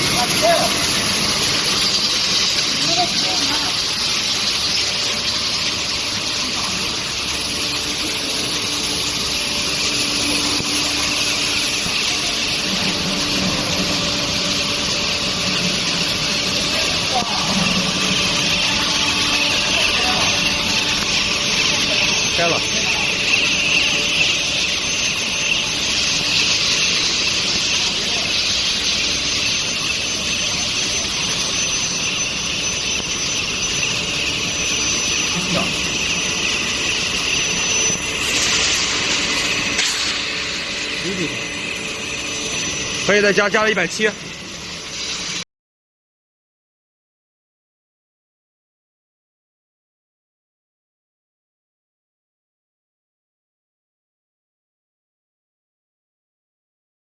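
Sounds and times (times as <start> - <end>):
high steady whine: 0.0 - 45.4
industrial machine hissing: 0.0 - 45.4
thin high-pitched tone: 0.0 - 45.4.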